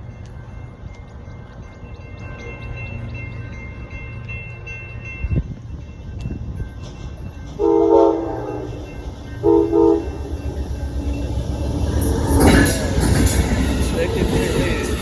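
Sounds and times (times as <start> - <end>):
train rumbling: 0.0 - 15.0
train air horn blasts: 7.6 - 8.8, 9.4 - 10.3.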